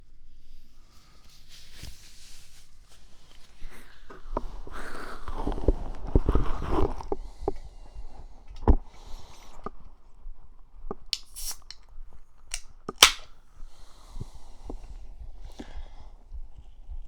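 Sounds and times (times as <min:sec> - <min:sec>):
short hisses: 0:11.2 - 0:11.8
close clicks and knocks: 0:12.5 - 0:13.3.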